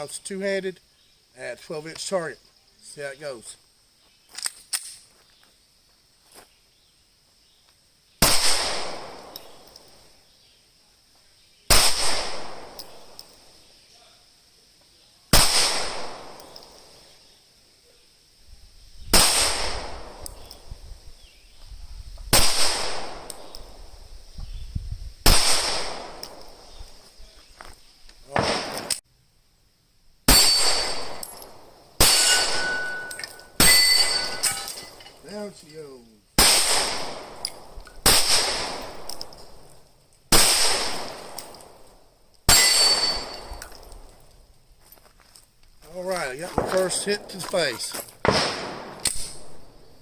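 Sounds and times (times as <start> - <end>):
pistol shots with ringing tail: 8.2 - 10.0, 11.7 - 13.4, 15.3 - 16.9, 19.1 - 20.6, 22.3 - 23.8, 25.2 - 26.6, 28.4 - 29.0, 30.3 - 35.1, 36.4 - 39.7, 40.3 - 41.9, 42.5 - 44.0, 46.5 - 49.9.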